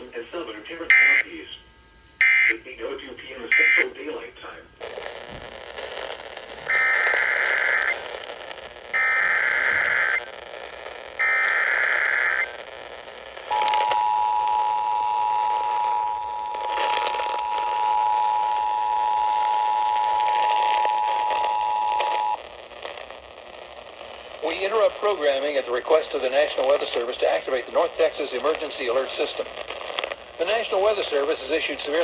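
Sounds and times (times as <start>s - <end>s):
radio static hiss and crackle: 0.0s - 32.0s
screeching digital data bursts: 4.9s - 10.4s, 11.0s - 14.1s.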